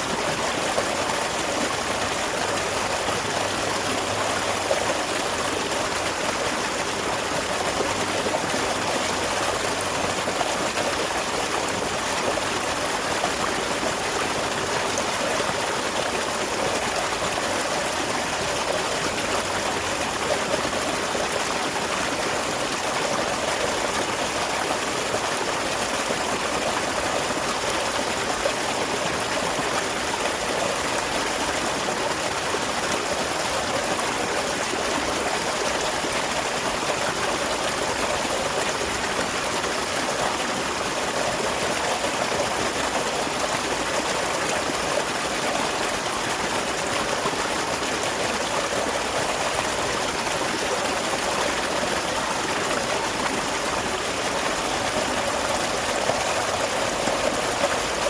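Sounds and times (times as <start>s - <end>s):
small waterfall splashing: 0.0s - 58.0s.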